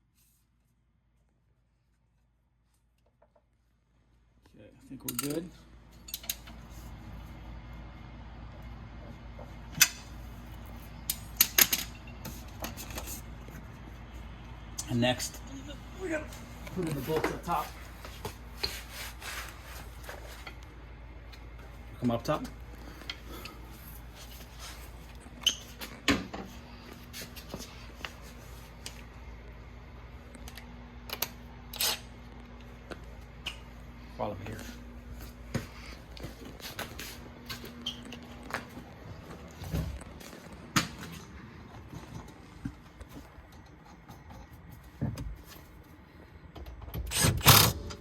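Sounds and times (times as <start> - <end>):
steady low hum: 0.0 - 48.0
tools and metal parts clicking: 5.0 - 6.6
tools clicking and knocking: 6.0 - 6.6.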